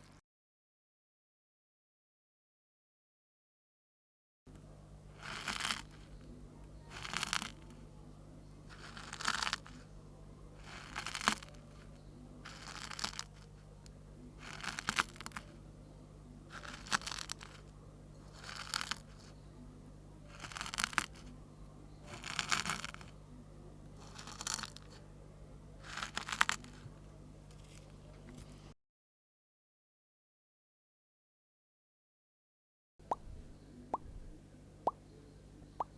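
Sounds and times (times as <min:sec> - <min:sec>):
low steady hum: 0:04.5 - 0:28.8, 0:33.0 - 0:35.9
rustling scraping with clicks: 0:05.2 - 0:06.2, 0:06.9 - 0:07.8, 0:08.7 - 0:09.9, 0:10.6 - 0:11.9, 0:12.5 - 0:13.7, 0:14.4 - 0:15.5, 0:16.5 - 0:19.4, 0:20.3 - 0:21.3, 0:22.1 - 0:23.1, 0:24.0 - 0:25.0, 0:25.8 - 0:26.9, 0:27.5 - 0:28.7.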